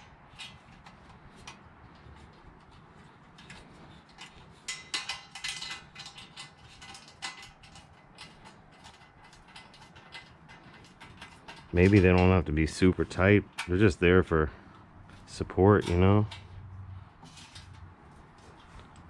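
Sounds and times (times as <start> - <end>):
small metal clicks: 0.0 - 12.4.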